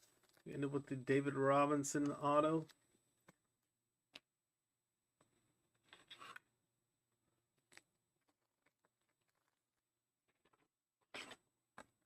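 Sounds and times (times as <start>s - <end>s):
trading cards rustling and clicking: 0.0s - 0.5s.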